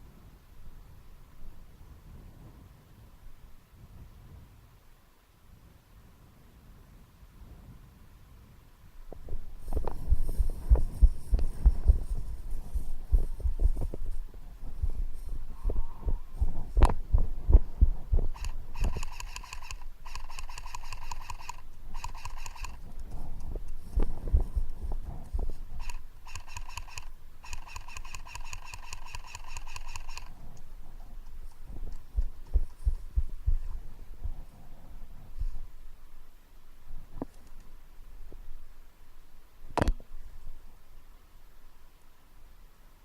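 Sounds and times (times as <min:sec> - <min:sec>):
airsoft gun full-auto bursts: 0:18.3 - 0:22.8, 0:25.8 - 0:30.3.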